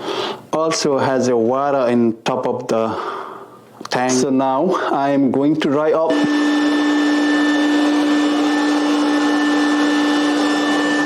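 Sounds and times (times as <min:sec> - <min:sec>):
drying fan motor whining: 0:06.1 - 0:11.0.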